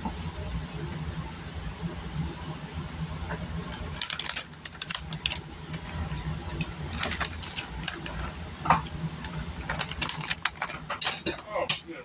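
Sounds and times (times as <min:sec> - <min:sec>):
low steady hum: 0:00.0 - 0:12.0
kitchen items clicking and rattling: 0:03.7 - 0:11.9.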